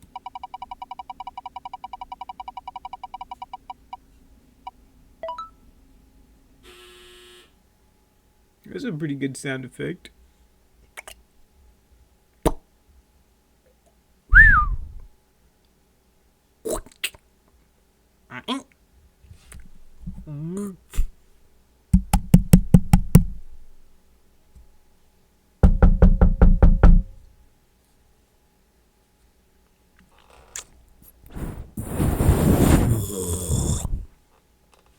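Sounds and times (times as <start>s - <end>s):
short buzzing tone: 6.7s - 7.6s
hollow mouth pops: 12.4s - 12.6s
mouth-made high pulses: 14.3s - 15.1s.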